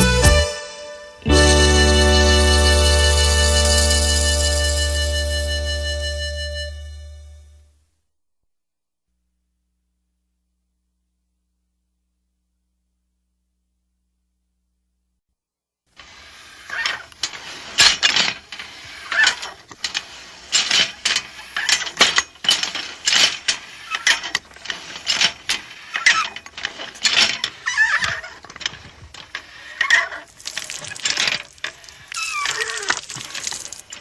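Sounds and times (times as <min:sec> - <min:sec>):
hiss: 0:16.0 - 0:16.8
short squeaky glide: 0:16.0 - 0:22.0, 0:23.6 - 0:34.0.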